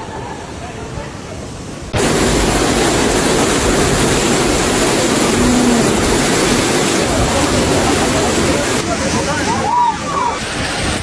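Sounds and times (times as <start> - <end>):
heavy rain roaring: 1.9 - 11.0.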